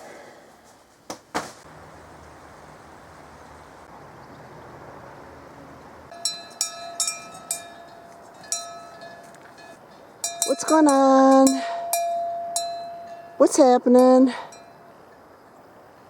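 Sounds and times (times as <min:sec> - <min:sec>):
metal bell clanking: 0:06.1 - 0:15.0.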